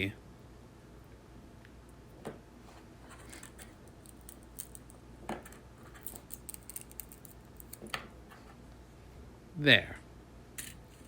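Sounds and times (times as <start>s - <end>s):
small tools clicking and scratching: 3.1s - 8.0s, 10.6s - 11.0s.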